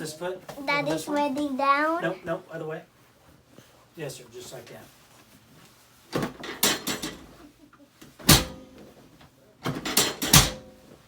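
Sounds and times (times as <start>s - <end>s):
sharp knocks and clunks: 8.2s - 8.8s, 9.6s - 10.8s.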